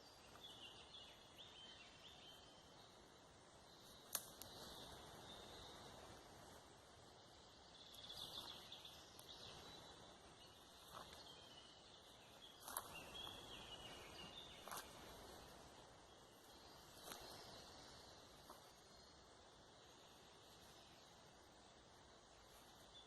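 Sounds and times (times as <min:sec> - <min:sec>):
steady hiss: 0:00.0 - 0:23.0
soft clicks: 0:04.0 - 0:04.7
faint high bird chirps: 0:07.2 - 0:21.2.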